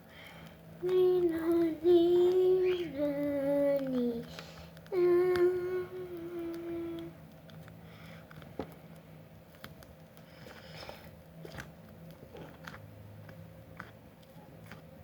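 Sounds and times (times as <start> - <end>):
girl humming a tune: 0.8 - 7.2.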